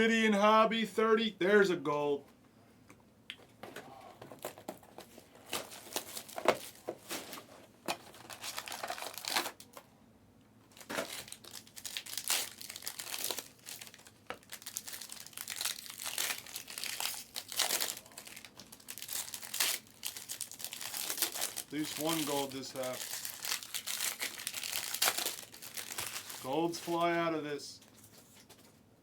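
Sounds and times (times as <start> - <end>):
wrappers crinkling and tearing: 4.4 - 9.8, 10.7 - 27.2.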